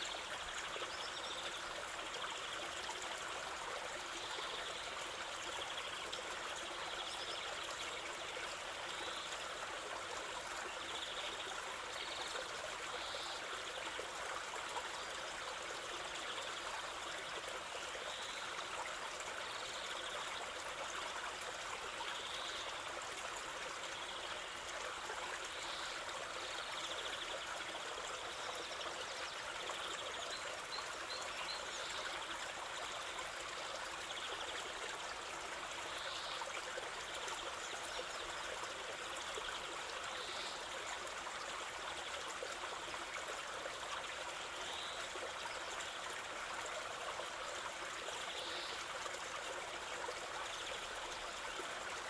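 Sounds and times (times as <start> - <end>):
river water flowing over stones: 0.0 - 52.0.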